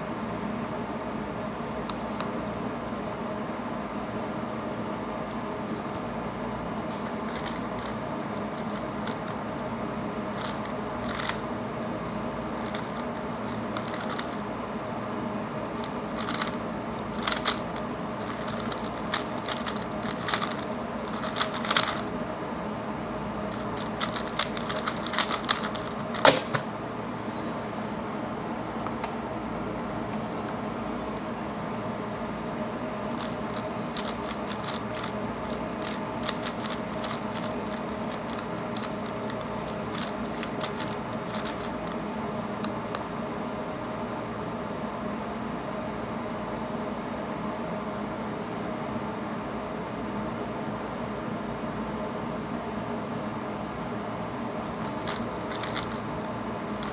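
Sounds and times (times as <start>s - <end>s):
steady hum: 0.0s - 44.2s, 54.5s - 56.9s
puzzle cube plastic clicking: 7.0s - 9.6s, 10.4s - 11.9s, 12.6s - 14.5s, 15.7s - 22.3s, 23.5s - 26.7s, 33.0s - 42.0s, 54.7s - 56.2s.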